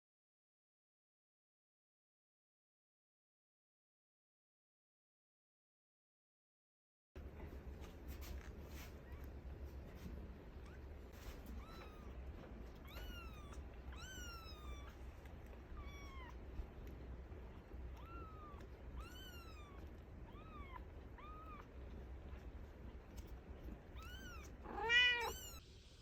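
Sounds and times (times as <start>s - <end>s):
faint steady hum: 7.2s - 26.0s
kittens mewing: 10.5s - 25.6s.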